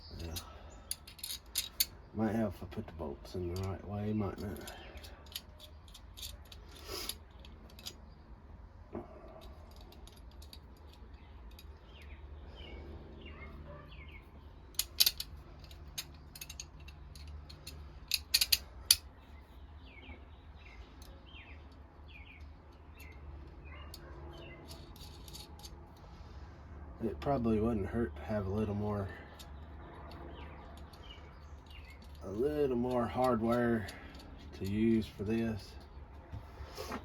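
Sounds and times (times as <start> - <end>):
metallic clicks and clinks: 0.1 - 2.0, 3.5 - 8.0, 14.7 - 19.1, 20.8 - 26.0, 29.3 - 35.2.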